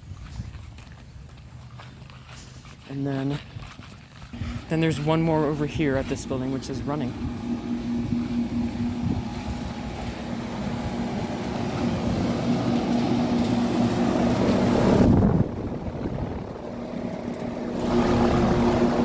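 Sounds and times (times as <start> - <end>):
air conditioner unit humming: 4.3 - 19.0.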